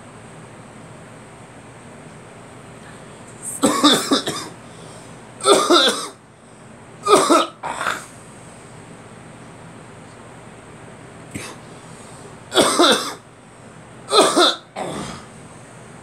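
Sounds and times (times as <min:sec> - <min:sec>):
person coughing: 0:03.5 - 0:04.6, 0:05.4 - 0:06.2, 0:07.0 - 0:08.1, 0:11.4 - 0:11.6, 0:12.5 - 0:13.2, 0:14.1 - 0:15.3.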